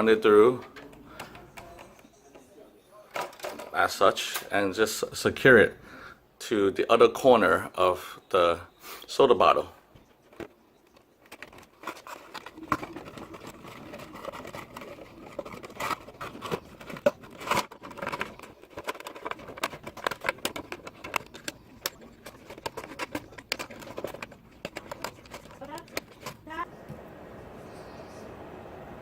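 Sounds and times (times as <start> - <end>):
plastic crinkling: 11.2 - 26.7.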